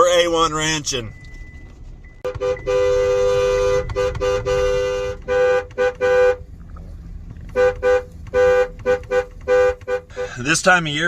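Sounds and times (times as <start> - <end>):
two-tone vehicle horn honking: 2.2 - 6.5, 7.5 - 10.4.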